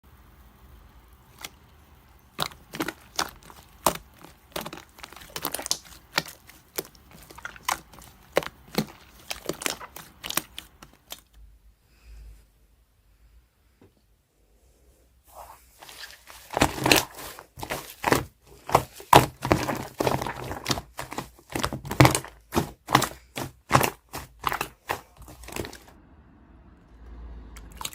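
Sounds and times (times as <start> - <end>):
slime popping and crackling: 1.1 - 11.4, 15.8 - 25.9.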